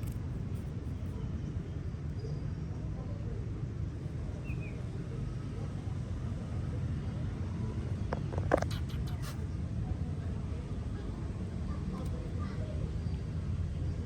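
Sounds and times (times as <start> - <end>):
faint high squeak: 8.5 - 9.5.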